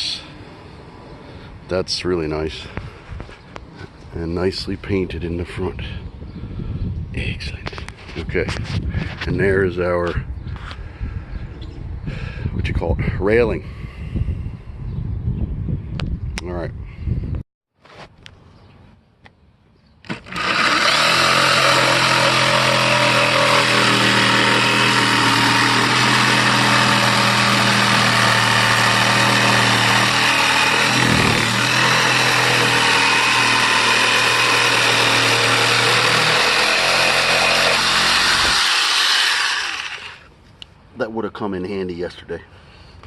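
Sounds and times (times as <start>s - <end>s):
electric power tool running: 20.1s - 40.3s.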